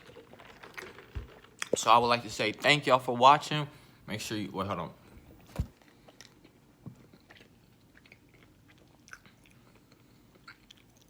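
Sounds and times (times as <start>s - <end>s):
chewing crunches: 5.5s - 11.0s.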